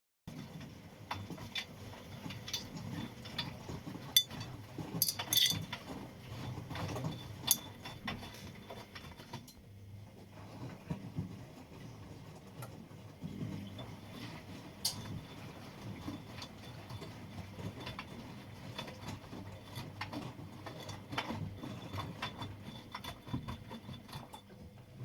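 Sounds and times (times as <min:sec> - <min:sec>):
washing machine humming: 0:00.3 - 0:25.0.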